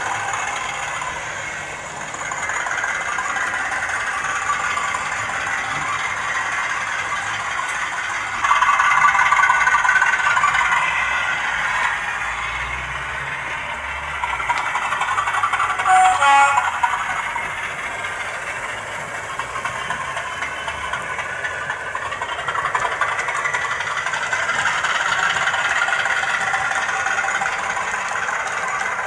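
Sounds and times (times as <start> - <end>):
diesel engine through small speaker: 0.0 - 29.0
train horn: 15.8 - 16.9.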